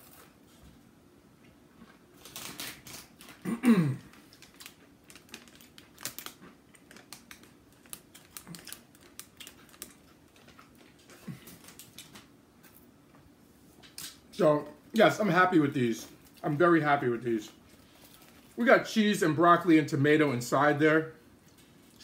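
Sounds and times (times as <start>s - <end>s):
crunchy chewing: 1.7s - 12.9s.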